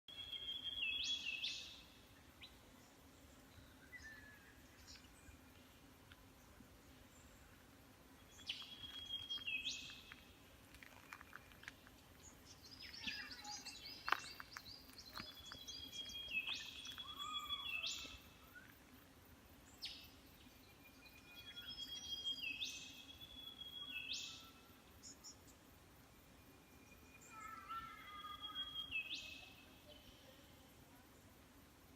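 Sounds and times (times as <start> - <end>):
bird chirps and calls: 12.5 - 18.2, 27.0 - 30.2.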